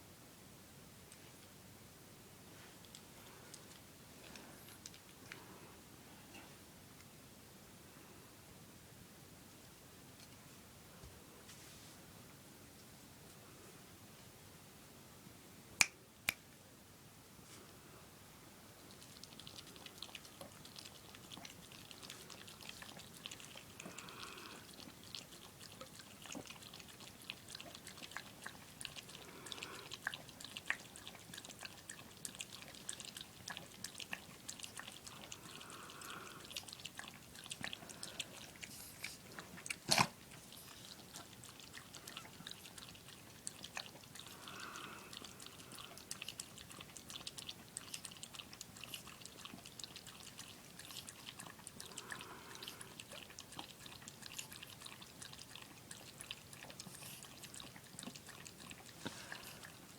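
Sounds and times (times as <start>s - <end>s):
dog lapping: 18.9s - 59.9s.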